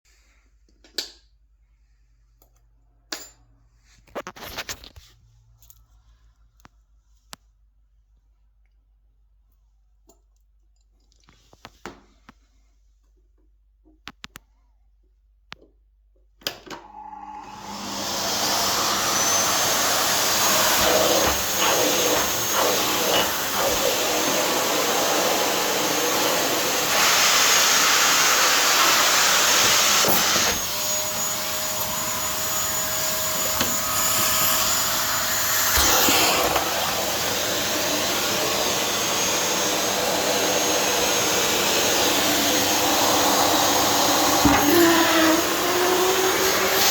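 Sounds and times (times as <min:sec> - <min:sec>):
vacuum cleaner running: 0:16.8 - 0:46.9.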